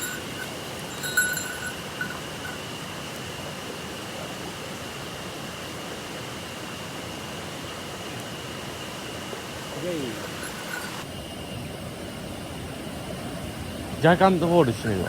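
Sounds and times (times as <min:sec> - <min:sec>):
mountain stream rushing: 0:00.0 - 0:03.0.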